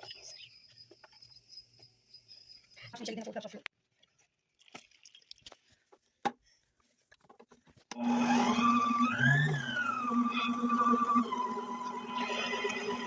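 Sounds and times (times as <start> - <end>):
kitchen machine motor whining: 7.9 - 13.0.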